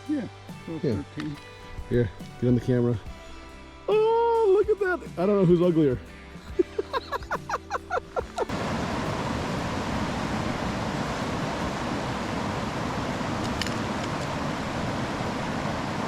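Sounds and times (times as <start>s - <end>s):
river water flowing: 7.6s - 16.0s.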